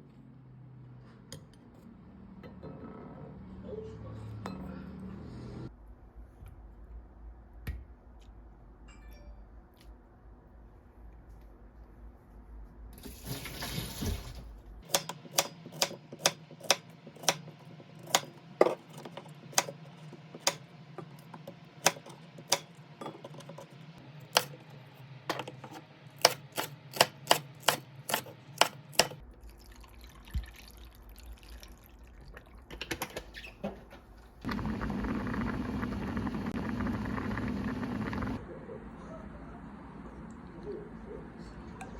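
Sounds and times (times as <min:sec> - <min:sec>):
low hum: 0:34.5 - 0:41.9.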